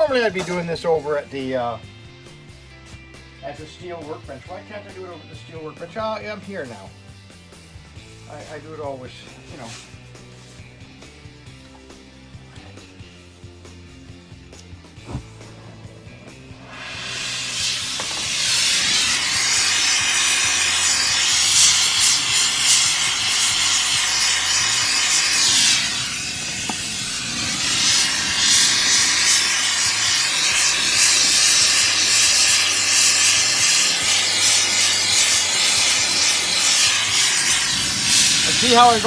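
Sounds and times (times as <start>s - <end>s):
torch flame hissing: 14.9s - 39.0s.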